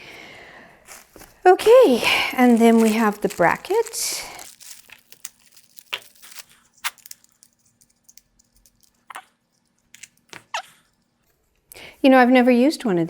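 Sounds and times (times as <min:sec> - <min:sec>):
plastic packaging crinkling: 0:00.8 - 0:11.1.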